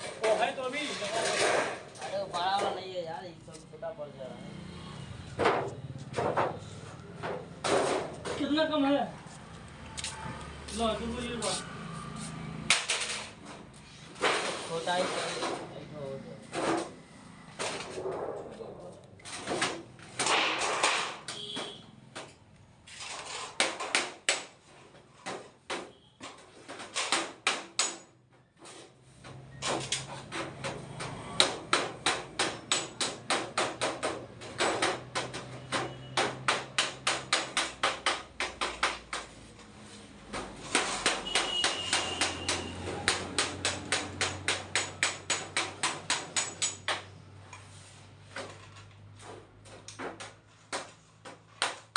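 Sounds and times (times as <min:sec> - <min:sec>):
hammer blows: 0:40.7 - 0:46.6.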